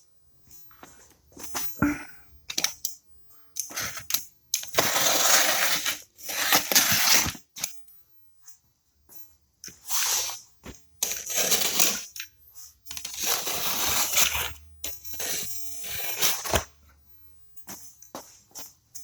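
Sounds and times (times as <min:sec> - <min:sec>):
cardboard rasping: 0:04.8 - 0:07.4
cardboard boxes scraping and rustling: 0:04.8 - 0:07.5, 0:13.1 - 0:14.6, 0:15.2 - 0:16.7.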